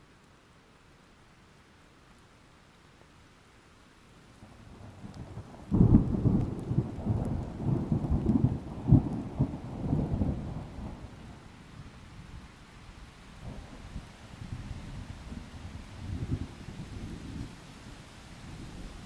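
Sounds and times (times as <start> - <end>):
rain hiss: 0.0 - 19.0
thunder crack and rumble: 4.8 - 11.2.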